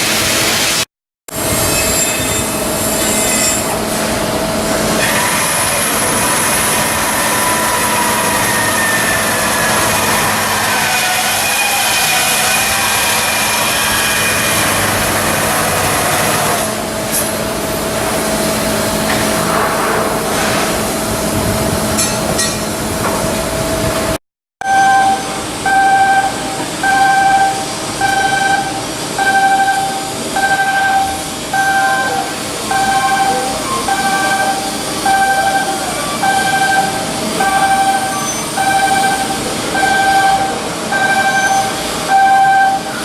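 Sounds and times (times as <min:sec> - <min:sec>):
machinery hum: 0:01.3 - 0:43.0
electronic warning beep: 0:24.6 - 0:43.0
held tone: 0:24.6 - 0:43.0.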